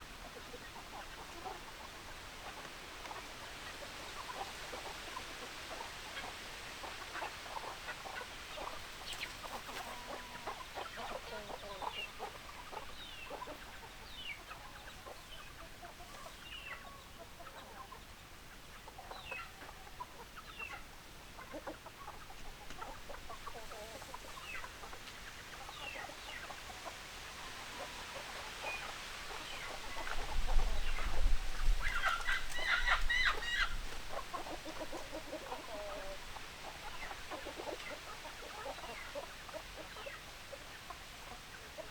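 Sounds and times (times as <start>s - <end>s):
chickens clucking: 0.0s - 41.9s.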